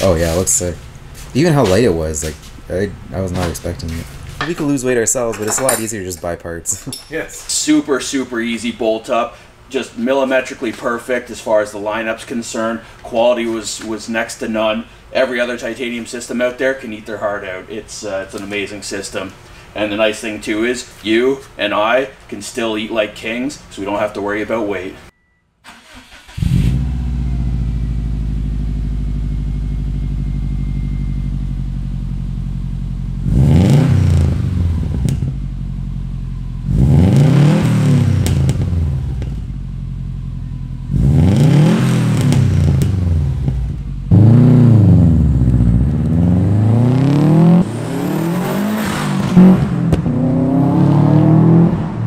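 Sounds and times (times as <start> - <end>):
car engine idling and revving: 26.2 - 52.0.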